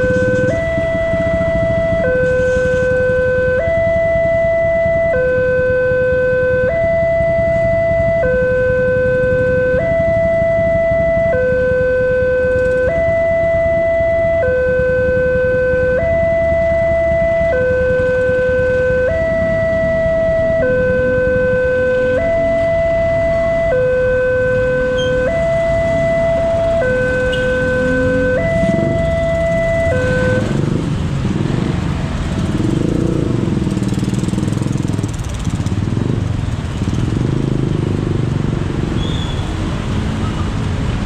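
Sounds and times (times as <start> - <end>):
level crossing two-tone siren: 0.0 - 30.9
low rumble of road noise: 0.0 - 41.0.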